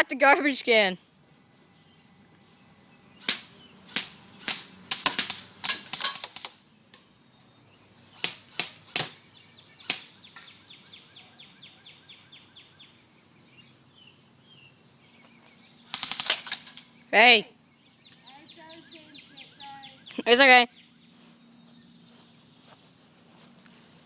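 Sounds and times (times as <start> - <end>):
airsoft gun shots: 3.2 - 6.6, 8.1 - 10.5, 15.9 - 16.8.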